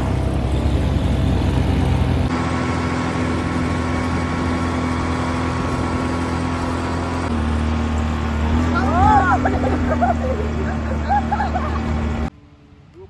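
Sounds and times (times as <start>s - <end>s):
engine running at low revs: 0.0s - 12.8s.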